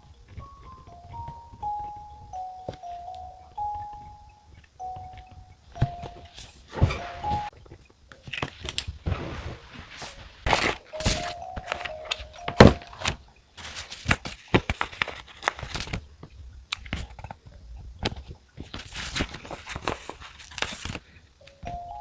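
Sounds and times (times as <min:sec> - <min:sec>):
faint chiming melody: 0:00.0 - 0:07.5, 0:10.9 - 0:13.2, 0:21.4 - 0:22.0
paper rustling and scratching: 0:13.0 - 0:16.0, 0:18.6 - 0:21.2.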